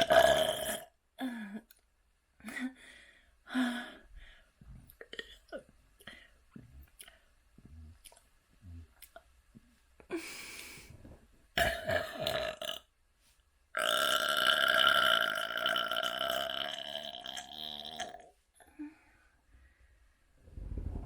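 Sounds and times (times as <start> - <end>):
person burping: 0.0 - 1.0, 11.6 - 12.9, 13.8 - 18.3.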